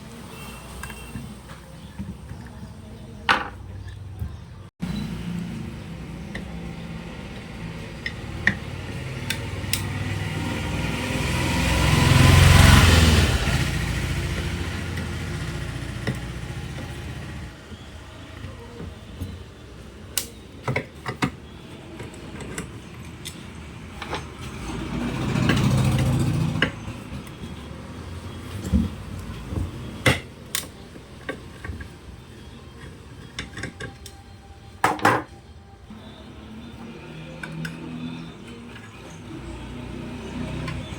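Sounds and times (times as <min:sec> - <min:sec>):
vehicle engine passing by: 0:04.8 - 0:17.8, 0:22.2 - 0:30.0, 0:35.9 - 0:40.9.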